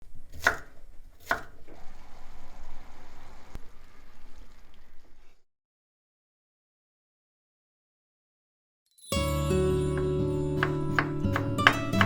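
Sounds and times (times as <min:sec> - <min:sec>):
food preparation noise: 0:00.0 - 0:05.4
knife chopping on cutting board: 0:00.3 - 0:01.6, 0:10.0 - 0:12.0.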